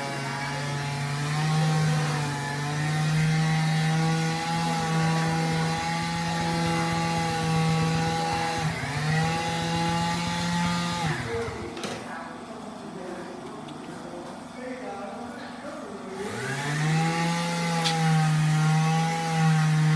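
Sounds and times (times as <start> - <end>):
small motor running: 0.0 - 11.8, 16.2 - 19.9.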